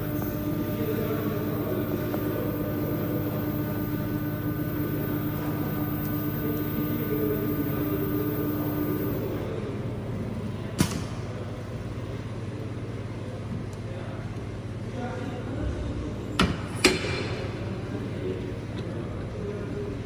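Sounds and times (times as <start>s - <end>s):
machine motor whine: 0.0s - 10.0s
low steady hum: 0.0s - 10.7s.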